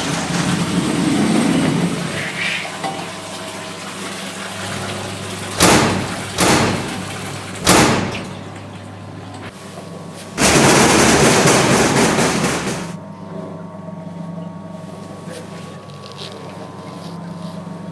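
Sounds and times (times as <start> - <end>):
loud sudden noisy hits: 5.6 - 8.5, 10.4 - 13.0.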